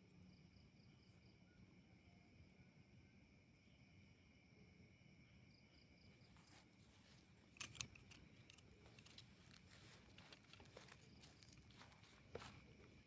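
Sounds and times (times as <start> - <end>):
night insects trilling: 0.0 - 13.0
faint crackles and sharp clicks: 6.6 - 12.6.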